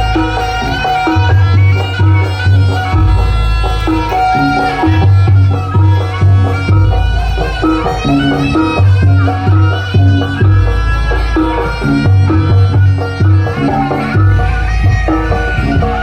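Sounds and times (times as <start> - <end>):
melody: 0.0 - 16.0
repeating drum beat: 0.0 - 16.0.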